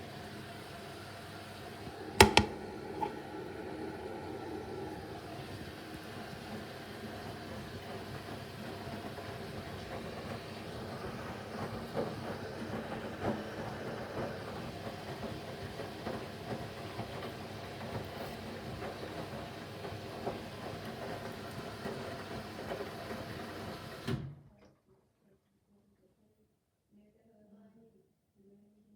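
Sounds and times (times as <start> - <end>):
washing machine drum rumbling: 1.8 - 17.9
knocks from washing machine: 2.2 - 3.1.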